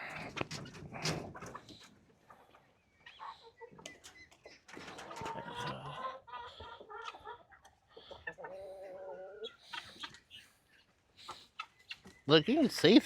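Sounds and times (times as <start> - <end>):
chickens clucking: 0.0 - 13.0.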